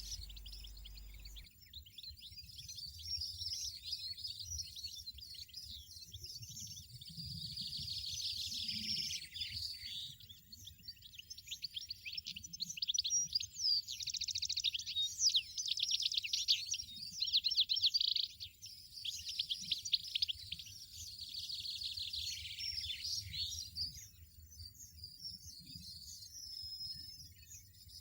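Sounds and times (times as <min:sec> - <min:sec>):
finches twittering: 0:00.0 - 0:01.5.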